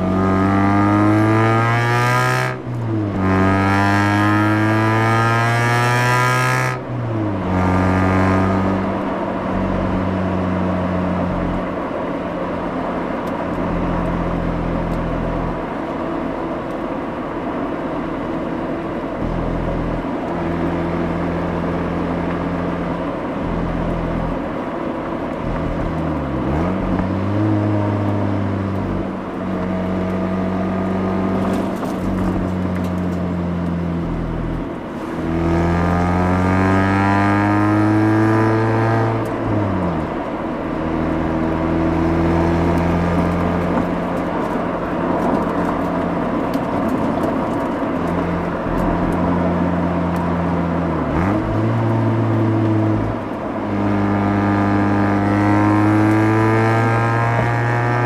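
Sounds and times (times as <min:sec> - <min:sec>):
rotary engine accelerating: 0:00.0 - 0:11.8, 0:25.4 - 0:58.0.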